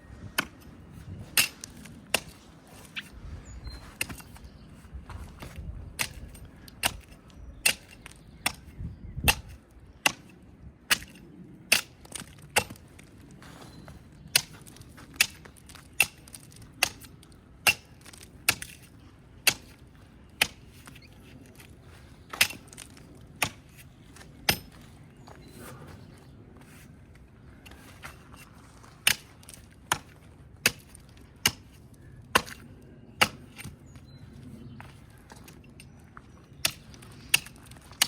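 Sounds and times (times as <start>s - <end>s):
axe chopping into tree: 1.3s - 3.1s, 5.4s - 10.3s, 10.9s - 12.8s, 15.2s - 19.8s, 22.3s - 23.8s, 29.0s - 31.7s, 32.3s - 32.6s, 33.2s - 33.7s.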